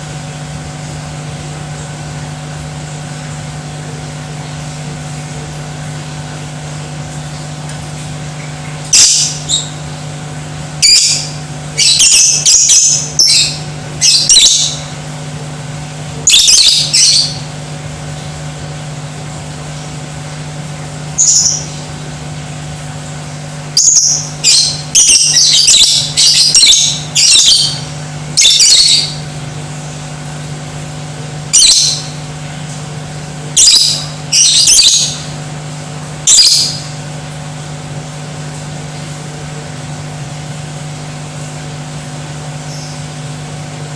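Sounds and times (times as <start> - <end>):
lovebird shrill calls: 8.9 - 9.7, 10.8 - 14.8, 16.3 - 17.4, 23.8 - 27.8, 28.4 - 29.2, 31.5 - 32.2, 33.6 - 35.2, 36.3 - 36.9.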